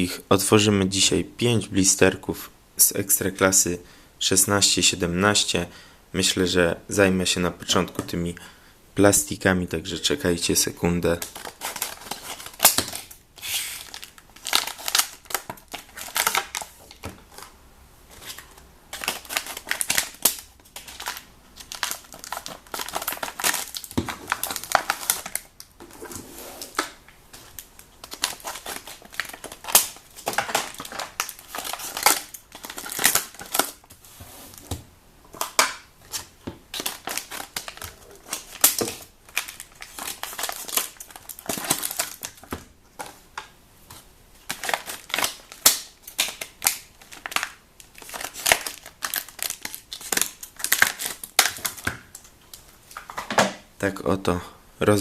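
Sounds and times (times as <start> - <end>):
stiff plastic crinkling: 11.0 - 34.7, 35.3 - 53.5
plastic packs being torn open: 11.1 - 17.5, 18.2 - 33.9, 35.4 - 42.6, 44.4 - 53.2.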